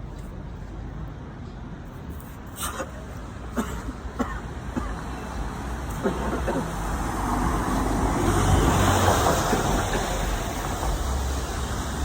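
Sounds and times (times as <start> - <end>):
traffic rumble: 0.0 - 12.0
vehicle passing: 4.6 - 12.0.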